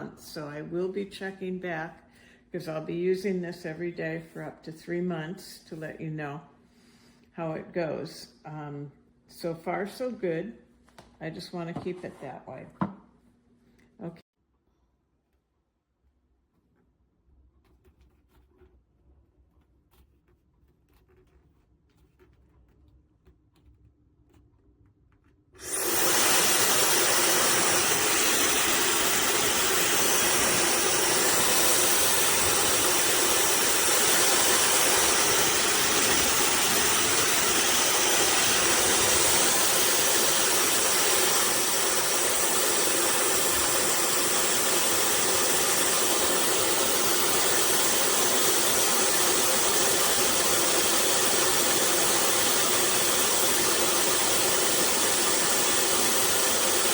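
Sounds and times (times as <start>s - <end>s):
hair dryer airflow hiss: 25.6s - 56.9s.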